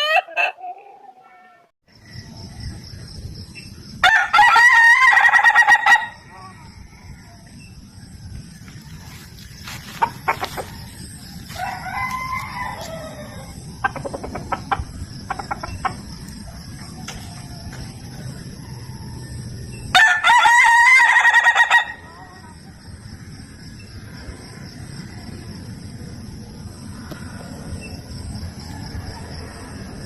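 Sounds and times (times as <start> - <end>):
rooster crowing: 0.0 - 1.0, 4.0 - 7.5, 10.2 - 13.6, 17.4 - 22.2.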